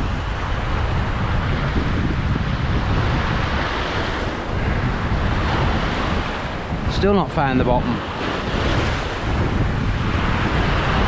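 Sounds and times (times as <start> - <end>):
sea surf washing: 0.0 - 11.0
wind buffeting microphone: 0.0 - 11.0.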